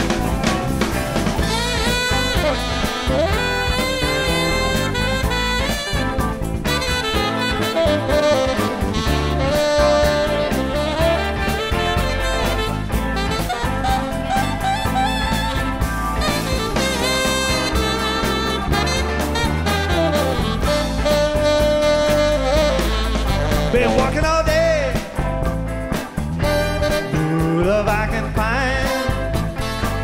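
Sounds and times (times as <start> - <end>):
drums: 0.0 - 30.0
jazzy music with saxophone and brass: 0.0 - 30.0
person singing: 23.5 - 25.2, 26.9 - 29.4.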